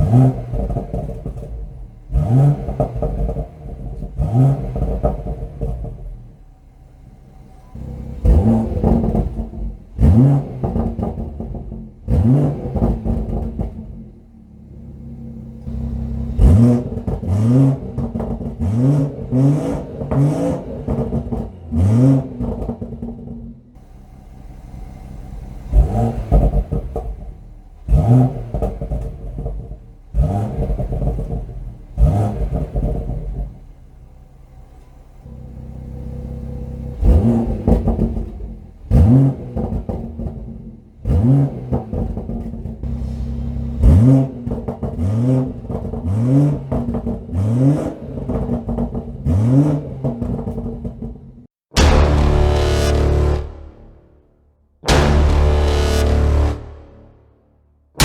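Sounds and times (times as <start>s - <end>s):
car engine idling: 0.0s - 57.3s
car engine revving: 0.0s - 58.0s.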